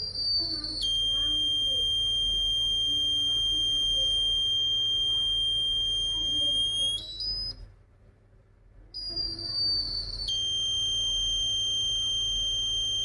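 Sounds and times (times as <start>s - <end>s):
fire alarm tone: 0.0s - 7.6s, 9.0s - 13.0s.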